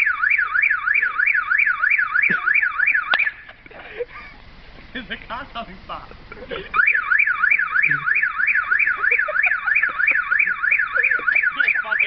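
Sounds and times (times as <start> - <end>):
car alarm siren: 0.0 - 3.6, 6.7 - 12.0.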